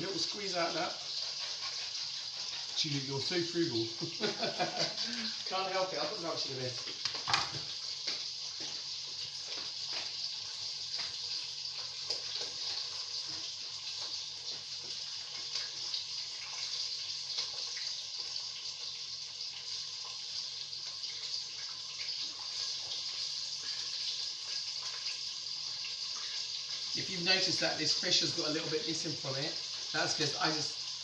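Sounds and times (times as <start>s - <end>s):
hot oil sizzling in a pot: 0.0s - 31.0s
small crackles: 6.6s - 27.0s.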